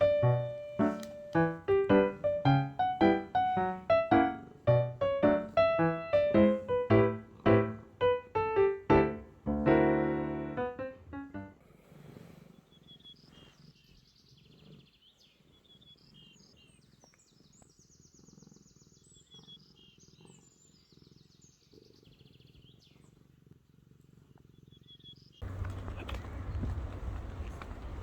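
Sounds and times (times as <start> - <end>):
small birds chirping and trilling: 12.3 - 23.5, 24.1 - 28.0.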